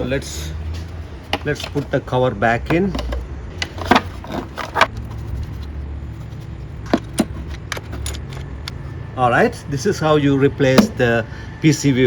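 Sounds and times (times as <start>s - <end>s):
steady low rumble: 4.8s - 11.7s.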